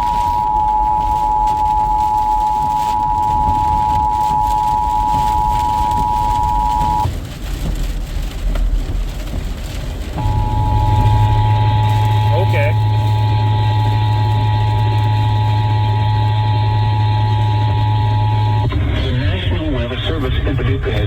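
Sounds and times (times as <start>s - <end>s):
two-tone alert signal: 0.0s - 7.1s, 10.2s - 18.7s
rain rumble: 0.0s - 21.0s
vehicle noise: 0.0s - 21.0s.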